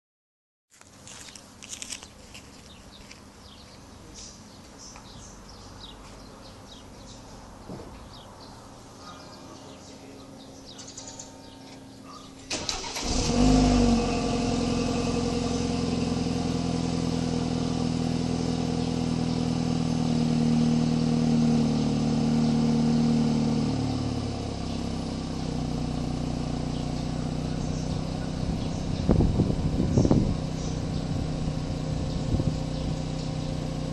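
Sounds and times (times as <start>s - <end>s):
car engine starting and idling: 12.4s - 33.9s.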